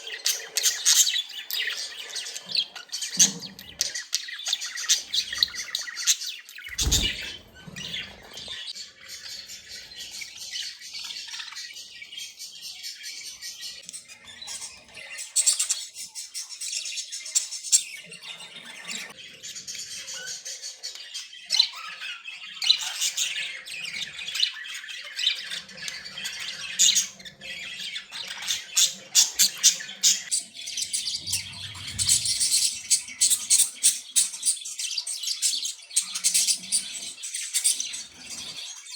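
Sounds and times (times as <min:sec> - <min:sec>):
budgies chirping and warbling: 0:00.0 - 0:38.9
budgies squawking: 0:26.1 - 0:34.0.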